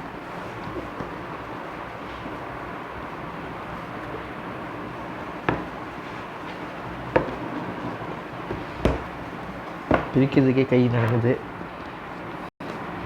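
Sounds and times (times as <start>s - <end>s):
box knocks and taps: 8.5s - 9.1s, 9.9s - 10.2s.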